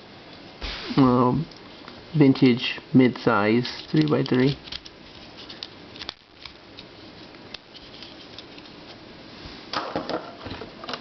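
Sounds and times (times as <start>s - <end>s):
plastic puzzles clicking: 3.8s - 4.9s.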